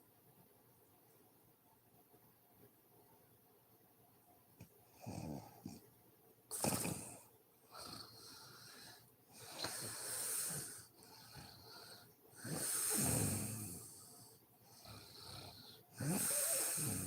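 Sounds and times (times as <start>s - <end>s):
woman snoring: 6.5s - 8.2s, 12.4s - 14.0s, 14.8s - 17.0s
wheezing breaths: 6.5s - 17.0s.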